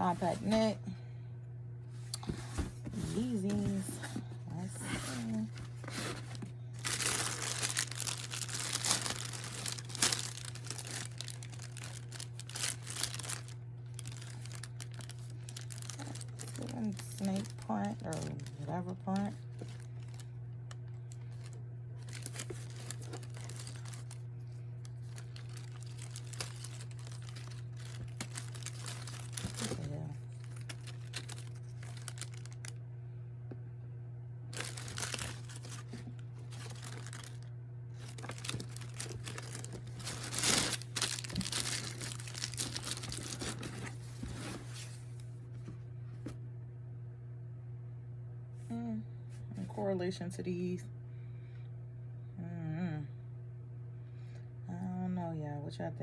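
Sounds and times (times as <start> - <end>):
steady low hum: 0.0 - 56.0
paper crinkling and tearing: 2.2 - 20.2, 21.1 - 24.2, 24.8 - 32.7, 34.6 - 37.4, 38.0 - 45.2.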